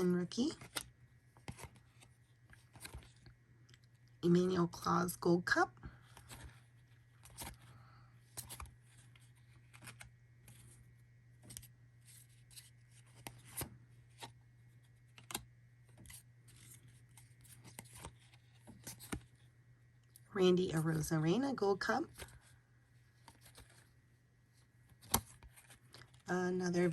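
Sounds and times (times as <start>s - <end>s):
low steady hum: 0.0s - 26.9s
cards flipping and sliding: 0.6s - 3.3s, 6.0s - 19.4s, 22.1s - 23.9s, 24.8s - 26.2s.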